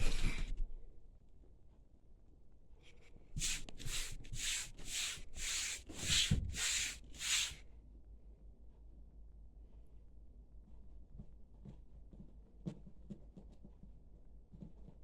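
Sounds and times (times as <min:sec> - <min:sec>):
raspy scratching strokes: 0:03.4 - 0:07.6.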